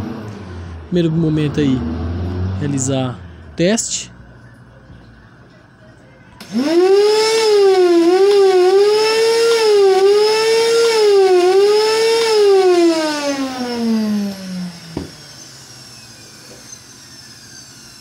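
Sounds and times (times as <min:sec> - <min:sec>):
vacuum cleaner motor whining: 0:06.4 - 0:18.0.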